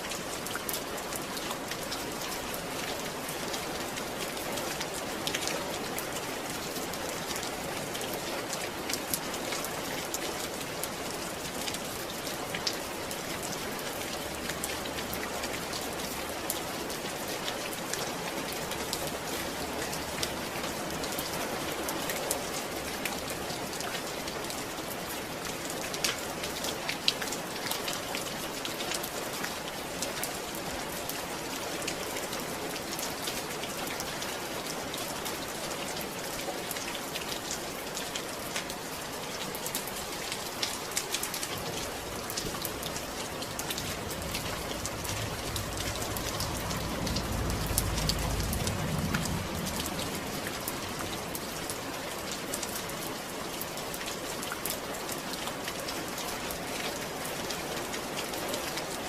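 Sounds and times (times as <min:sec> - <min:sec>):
rain pattering on a surface: 0:00.0 - 0:59.0
low rumble: 0:42.0 - 0:51.4.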